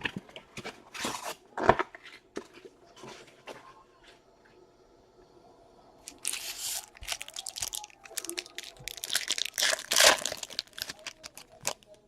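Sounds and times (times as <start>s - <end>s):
packaging torn and crinkled: 6.1s - 12.0s.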